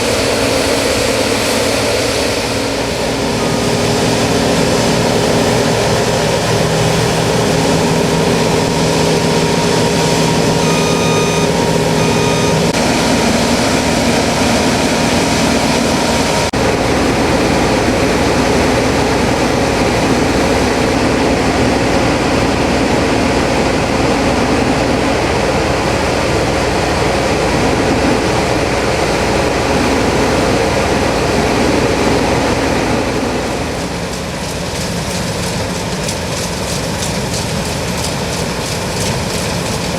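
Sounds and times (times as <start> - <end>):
combine harvester running: 0.0 - 39.9
short electronic beeps: 8.4 - 12.8.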